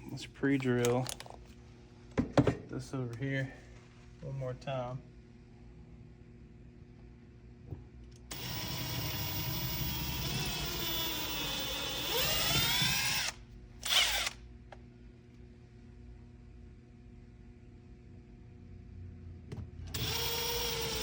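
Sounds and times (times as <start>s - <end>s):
electric drill boring into wood: 8.3s - 14.4s, 19.9s - 21.0s.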